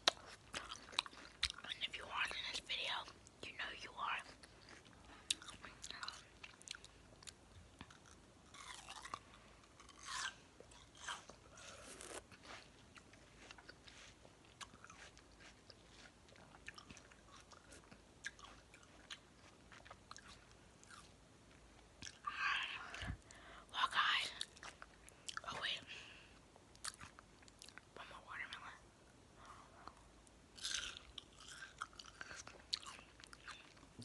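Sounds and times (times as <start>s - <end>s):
wet chewing of watermelon: 0.0s - 1.7s, 4.2s - 22.2s, 26.7s - 27.8s, 29.4s - 34.0s.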